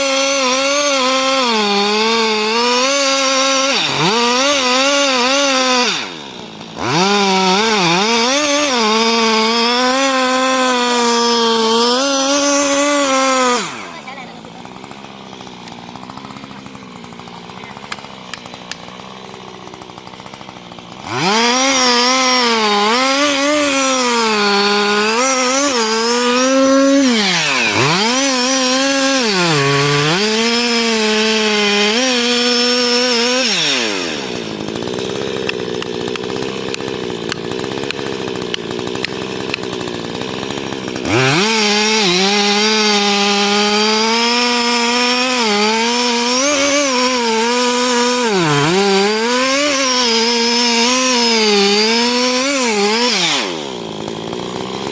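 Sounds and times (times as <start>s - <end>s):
chainsaw cutting wood: 0.0s - 54.9s.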